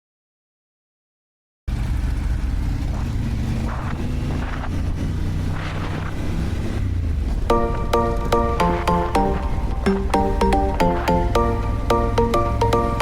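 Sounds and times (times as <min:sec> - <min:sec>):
motorcycle engine running: 0:01.7 - 0:05.6.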